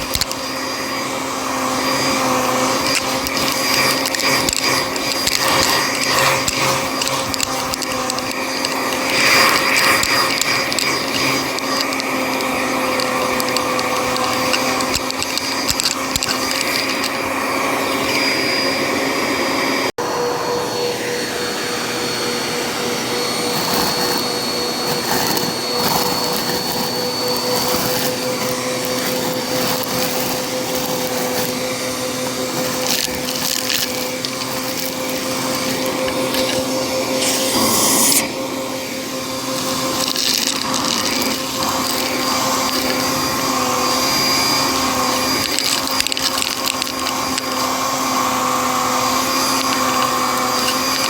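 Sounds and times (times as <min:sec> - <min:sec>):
vacuum cleaner motor whine: 0:00.0 - 0:51.0
foil confetti crackling and rattling: 0:01.8 - 0:17.2, 0:24.9 - 0:38.2, 0:39.5 - 0:51.0.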